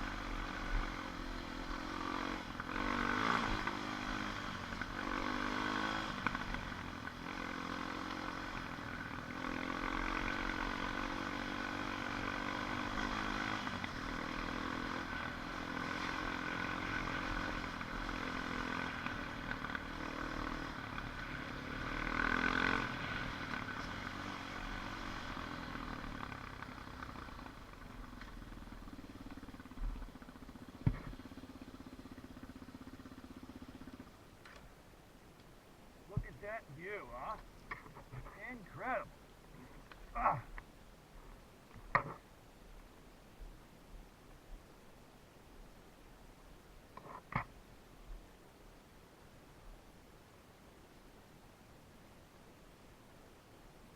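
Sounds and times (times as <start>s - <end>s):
atv engine running: 0.0s - 42.3s.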